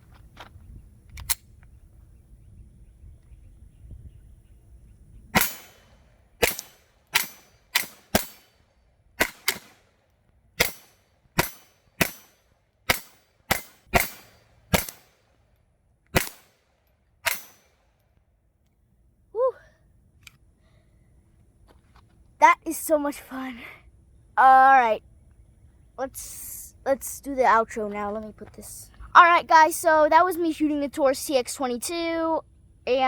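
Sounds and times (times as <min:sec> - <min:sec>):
pistol shots: 0:05.3 - 0:08.6, 0:09.2 - 0:10.0, 0:10.6 - 0:15.3, 0:16.1 - 0:17.8.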